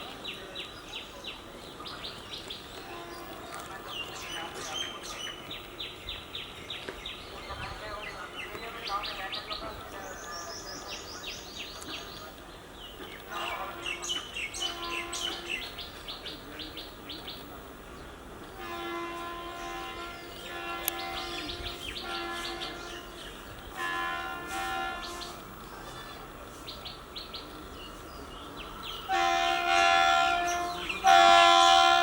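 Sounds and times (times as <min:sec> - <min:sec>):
birds chirping: 0:00.0 - 0:32.0
locomotive horn blasts: 0:02.8 - 0:03.8, 0:13.3 - 0:15.8, 0:18.6 - 0:25.5, 0:29.1 - 0:32.0.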